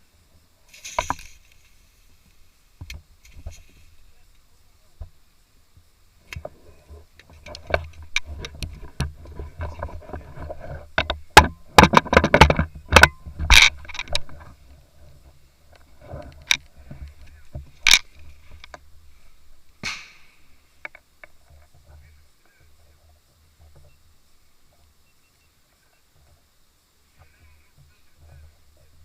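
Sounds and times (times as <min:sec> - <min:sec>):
player moving rustle: 0:00.7 - 0:02.5, 0:03.2 - 0:04.1
airsoft gunfire cracks: 0:19.8 - 0:20.4.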